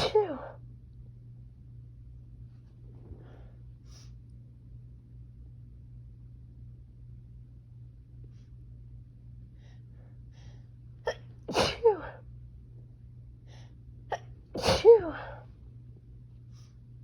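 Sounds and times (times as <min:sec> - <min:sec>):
woman sneezing: 0:00.0 - 0:00.6, 0:11.1 - 0:12.2, 0:14.1 - 0:15.4.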